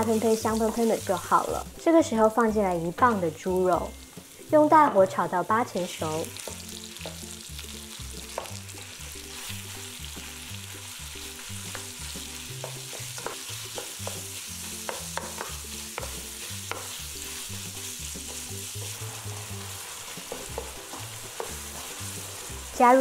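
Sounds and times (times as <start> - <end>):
meat sizzling in a pan: 0.0 - 23.0
spatula scraping a pan: 11.3 - 22.8.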